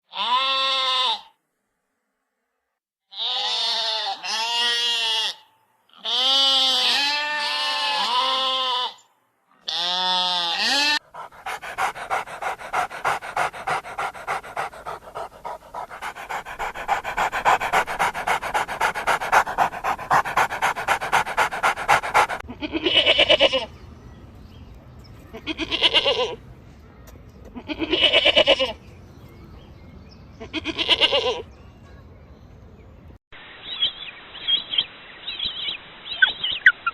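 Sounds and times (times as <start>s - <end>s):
dog panting fast: 10.6s - 22.4s.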